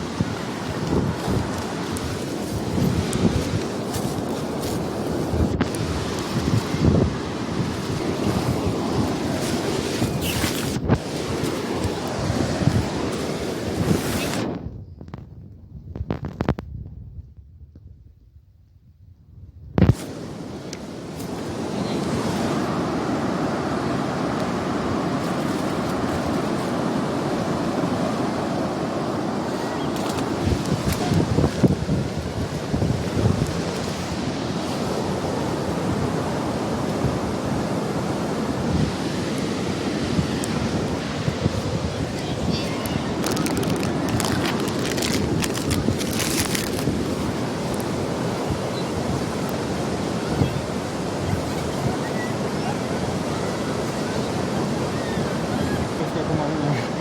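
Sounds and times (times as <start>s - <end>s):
waves breaking on a beach: 0.0s - 14.6s, 19.9s - 57.0s
wind buffeting microphone: 0.0s - 57.0s
crisp crackles: 0.6s - 6.7s, 7.7s - 13.2s, 25.2s - 26.7s, 41.5s - 48.0s.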